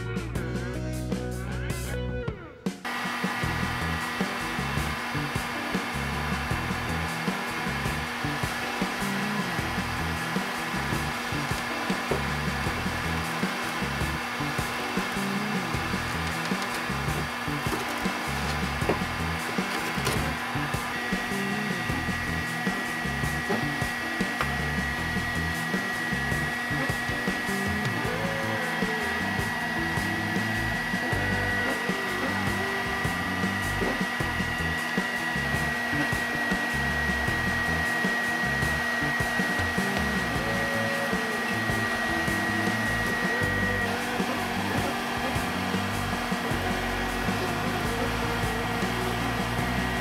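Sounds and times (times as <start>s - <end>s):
heat gun blowing hot air: 2.9s - 50.0s
high-pitched whine: 2.9s - 50.0s.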